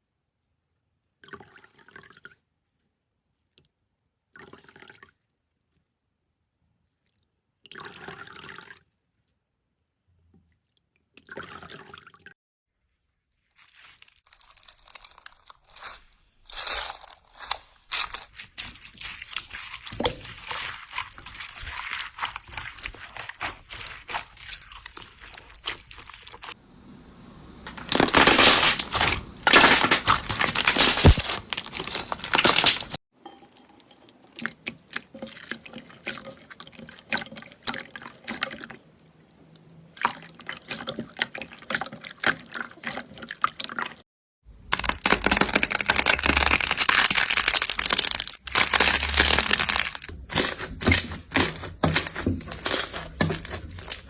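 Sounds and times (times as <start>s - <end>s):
slime clicking and popping: 44.7s - 51.0s.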